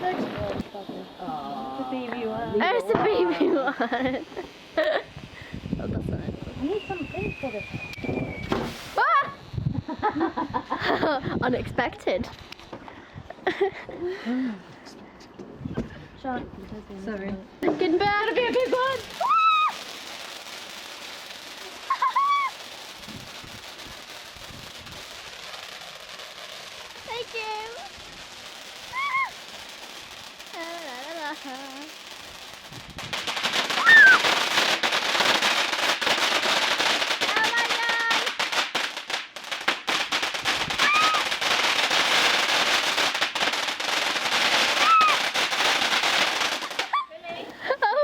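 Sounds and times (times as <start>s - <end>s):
steady hiss: 0.0s - 14.9s
fireworks crackling: 0.0s - 48.0s
high held vocal ooh: 21.9s - 22.6s, 33.8s - 34.3s, 40.8s - 41.3s.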